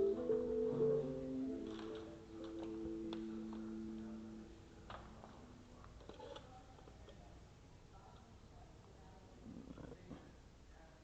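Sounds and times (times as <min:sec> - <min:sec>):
background music with melody: 0:00.0 - 0:04.0.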